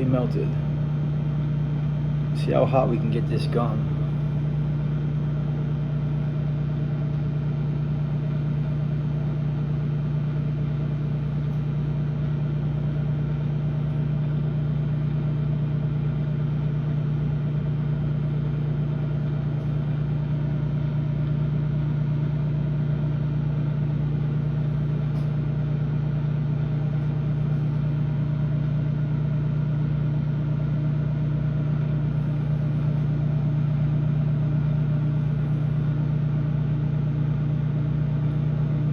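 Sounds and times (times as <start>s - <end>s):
microwave oven humming: 0.0s - 38.9s.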